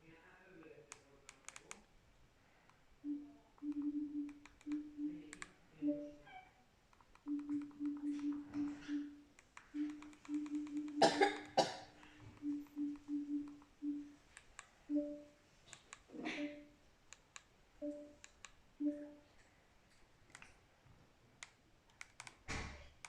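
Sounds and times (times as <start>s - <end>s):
faint clicks: 3.5s - 5.6s, 6.9s - 14.8s, 17.1s - 20.6s
person coughing: 11.0s - 11.9s.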